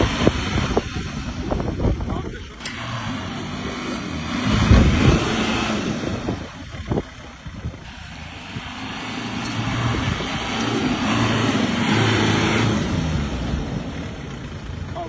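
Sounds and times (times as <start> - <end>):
diesel engine under throttle: 0.0 - 15.0
rushing noise: 7.8 - 14.5.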